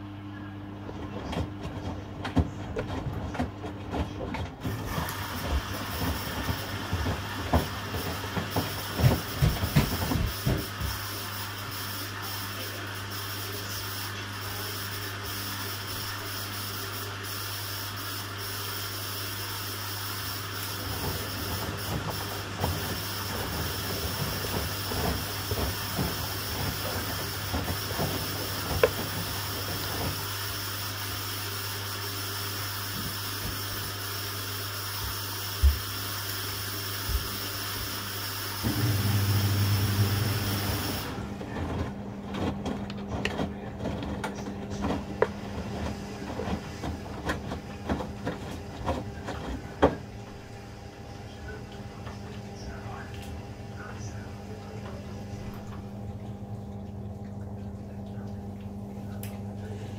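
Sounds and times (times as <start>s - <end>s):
washing machine hum: 0.0s - 59.9s
washing machine clicks and clunks: 0.7s - 12.3s, 20.5s - 31.4s, 32.7s - 34.1s, 38.6s - 53.5s, 54.6s - 59.5s.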